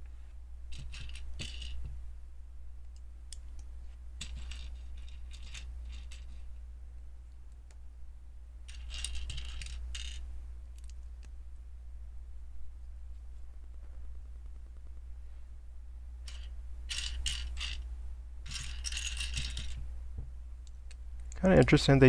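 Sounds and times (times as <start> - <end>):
steady low hum: 0.0 - 22.0
plastic bricks clicking and clattering: 0.7 - 1.9, 4.2 - 6.4, 8.7 - 10.2, 18.5 - 19.8.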